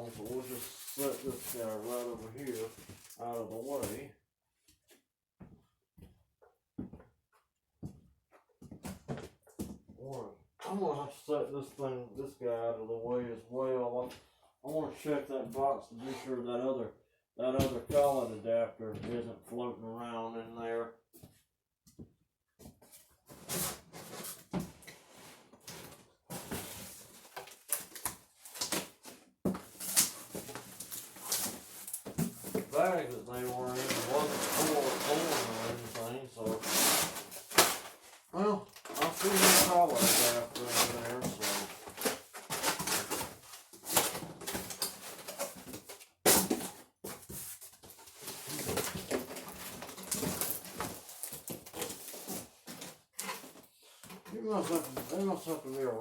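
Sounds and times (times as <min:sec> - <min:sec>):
cardboard box rustling and scraping: 0:23.3 - 0:38.3, 0:38.9 - 0:53.7.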